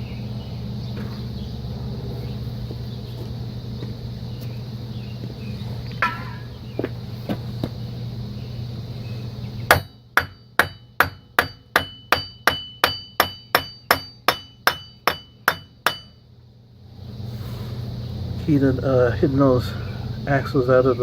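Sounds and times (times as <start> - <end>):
background hum: 0.0 - 21.0
hammer striking metal punch: 9.7 - 16.2.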